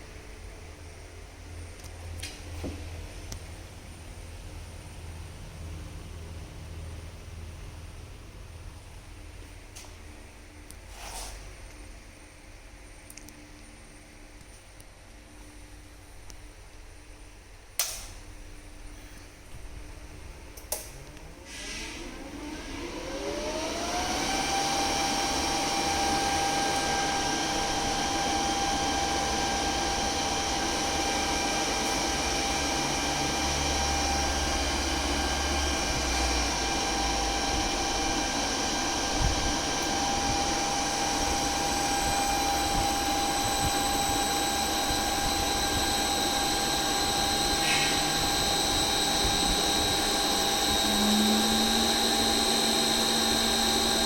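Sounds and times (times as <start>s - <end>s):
electric motor whine: 21.3s - 54.0s.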